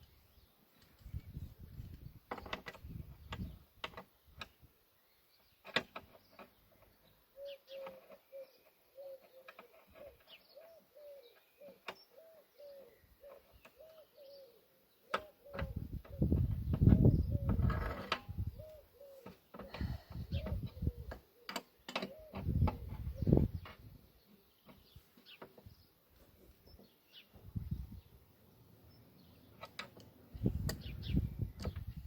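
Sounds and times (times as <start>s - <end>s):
bird calling: 6.4s - 25.8s.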